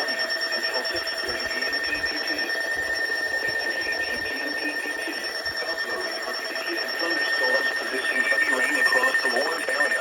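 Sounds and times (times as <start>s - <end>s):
weather radio alert tone: 0.0s - 10.0s.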